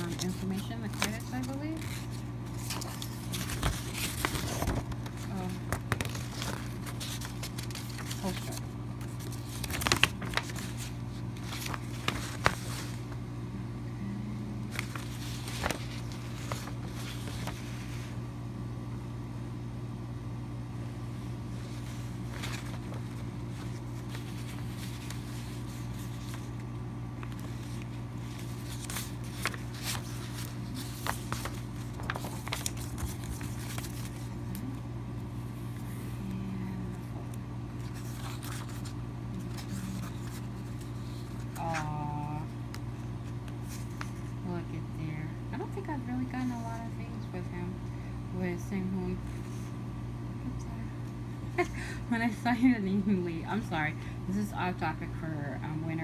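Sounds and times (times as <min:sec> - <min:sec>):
paper rustling and crackling: 0:00.0 - 0:13.2, 0:14.7 - 0:18.2, 0:21.5 - 0:34.8, 0:37.2 - 0:44.4
steady low hum: 0:00.0 - 0:56.0.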